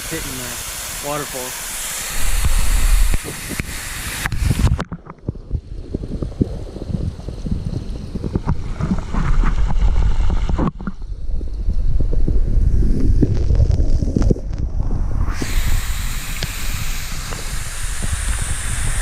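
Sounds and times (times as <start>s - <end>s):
underwater waterfall rumble: 0.0s - 19.0s.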